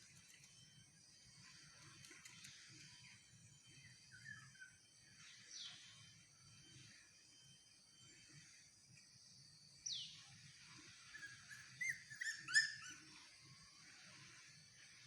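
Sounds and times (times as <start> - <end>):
puppies squeaking and whimpering: 11.2 - 13.1.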